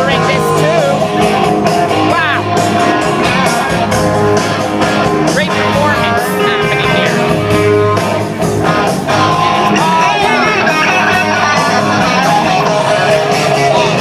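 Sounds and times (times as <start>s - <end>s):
electric guitar: 0.0s - 14.0s
live rock band: 0.0s - 14.0s
person singing: 8.9s - 14.0s.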